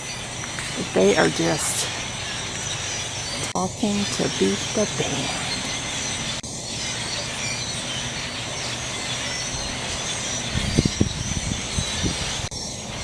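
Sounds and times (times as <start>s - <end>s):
wind buffeting microphone: 8.9s - 13.0s.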